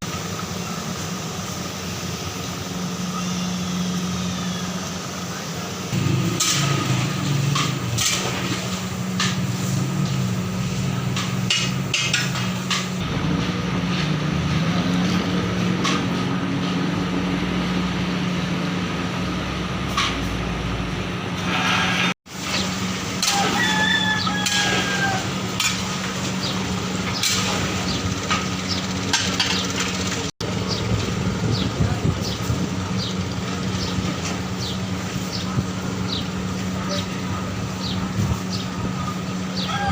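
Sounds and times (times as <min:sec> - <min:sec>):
steady roar with low hum: 0:00.0 - 0:39.9.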